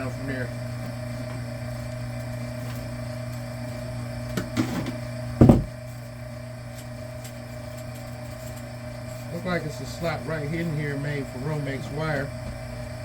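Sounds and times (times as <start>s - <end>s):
wire stripper motor humming: 0.0s - 13.0s
loud sharp thump: 5.4s - 5.8s.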